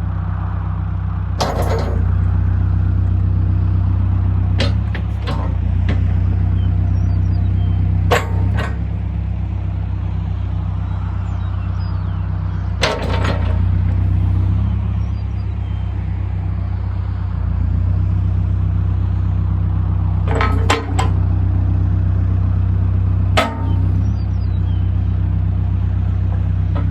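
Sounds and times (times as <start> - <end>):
diesel engine running: 0.0 - 26.9
sharp knocks: 4.6 - 6.4, 8.1 - 8.9, 23.4 - 24.3.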